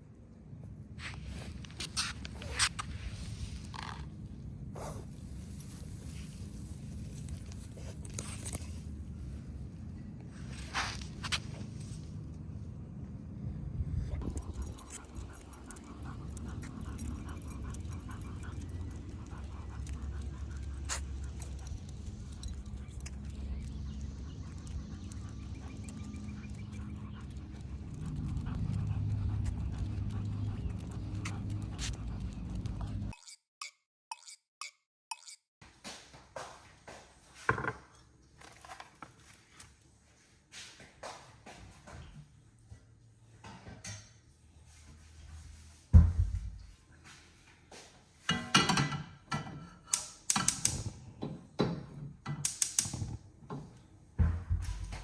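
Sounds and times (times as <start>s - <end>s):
dog breathing noisily: 14.1s - 33.1s
utensils and dishware clattering: 48.3s - 50.7s.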